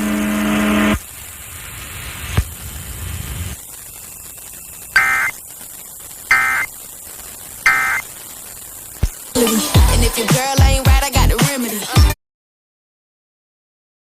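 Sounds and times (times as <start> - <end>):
faint radio hiss: 0.3 - 12.0
two-tone digital data bursts: 3.6 - 9.8.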